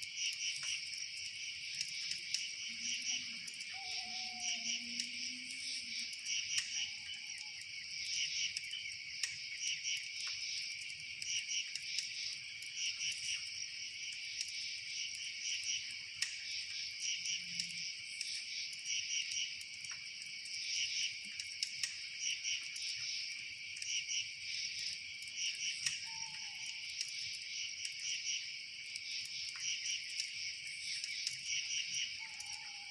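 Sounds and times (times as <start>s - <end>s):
crickets chirping: 0.0s - 32.9s
faint sharp clicks: 8.5s - 9.4s, 21.2s - 22.0s, 25.2s - 26.1s.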